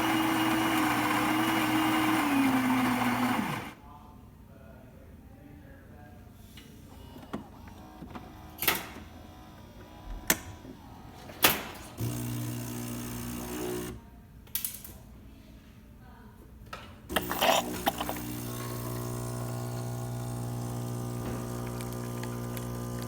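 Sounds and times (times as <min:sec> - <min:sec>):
espresso machine humming: 0:00.0 - 0:03.8, 0:12.0 - 0:14.0, 0:17.1 - 0:23.0
pump buzzing: 0:00.0 - 0:03.8, 0:12.0 - 0:14.0, 0:17.1 - 0:23.0.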